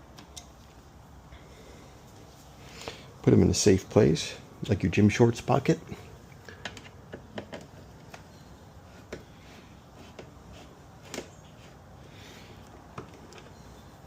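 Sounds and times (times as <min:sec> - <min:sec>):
light clicks of driver and bolts: 0:00.1 - 0:00.6.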